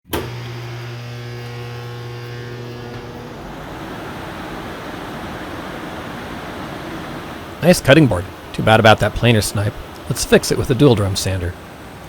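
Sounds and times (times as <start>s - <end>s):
motor hum: 0.1s - 12.0s
steady rushing noise: 3.1s - 12.0s.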